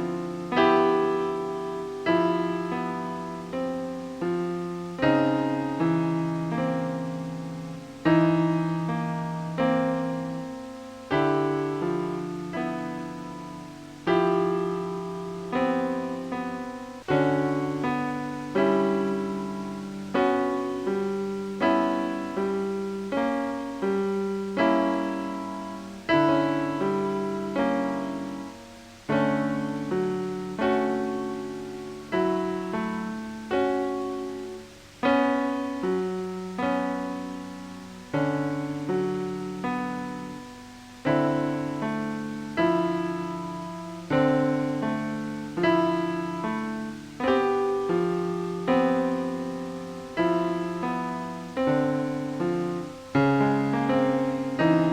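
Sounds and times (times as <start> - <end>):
slow solo piano: 0.0 - 54.9.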